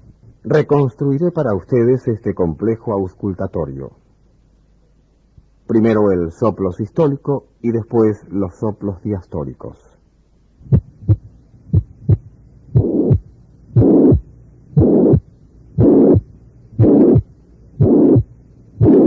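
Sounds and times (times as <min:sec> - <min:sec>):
paired short heart sounds: 0:10.6 - 0:14.2
rough heart murmur: 0:10.6 - 0:19.0.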